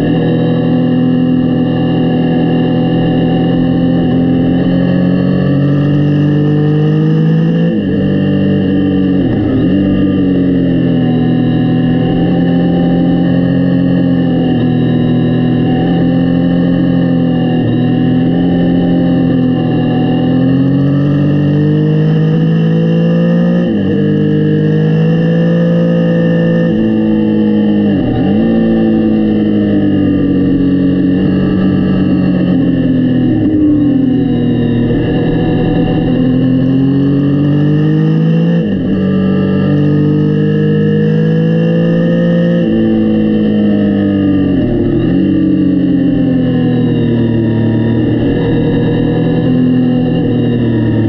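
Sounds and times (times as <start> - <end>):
motorcycle engine revving under load: 0.0 - 51.0.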